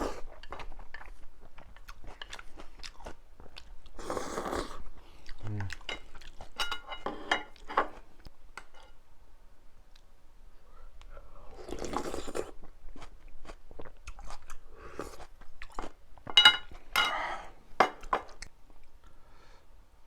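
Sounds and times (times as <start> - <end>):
person chewing and biting: 11.7 - 16.0.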